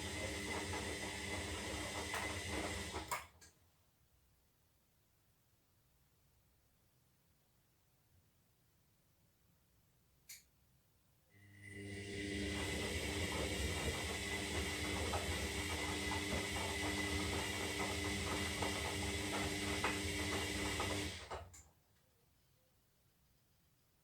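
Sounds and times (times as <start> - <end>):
washing machine drum turning: 0.0 - 3.2, 12.1 - 21.5.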